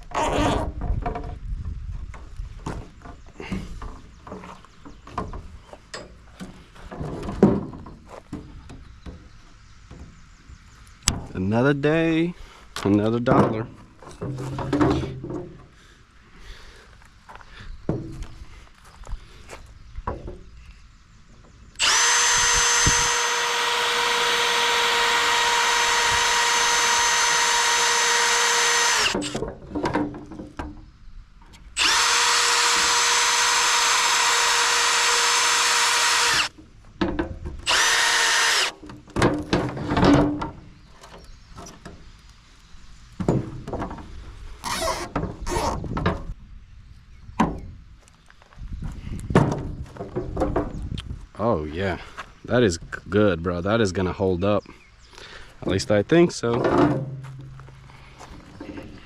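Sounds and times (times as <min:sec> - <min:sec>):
power drill whining: 0:21.8 - 0:29.4, 0:31.8 - 0:36.5, 0:37.6 - 0:38.7, 0:44.6 - 0:45.7
knocks and clatter: 0:38.8 - 0:40.6, 0:56.4 - 0:57.6.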